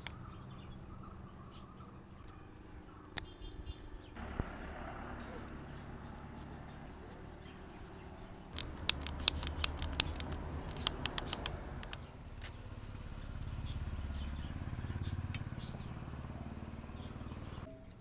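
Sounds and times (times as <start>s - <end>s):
bicycle gear shifter clicking: 8.5s - 12.0s.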